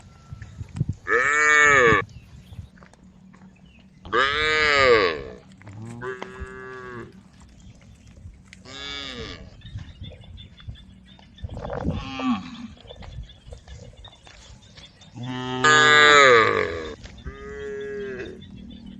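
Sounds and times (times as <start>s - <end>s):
cows mooing: 0.0s - 2.1s, 4.0s - 7.5s, 8.6s - 9.6s, 11.5s - 13.0s, 15.1s - 18.9s.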